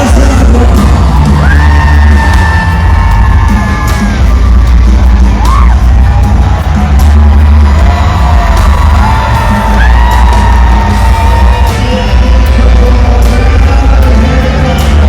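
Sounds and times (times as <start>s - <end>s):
music with heavy bass beat: 0.0s - 15.0s
person singing long notes: 8.4s - 15.0s.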